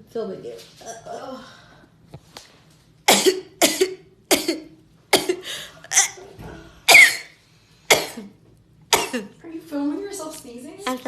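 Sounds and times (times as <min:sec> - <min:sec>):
person sneezing: 0:05.2 - 0:08.3.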